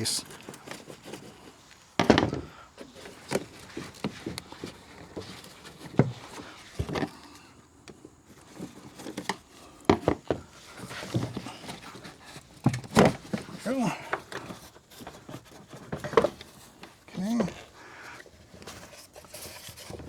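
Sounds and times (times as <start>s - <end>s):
plastic hose knocking and rustling: 2.0s - 7.2s, 7.9s - 17.6s.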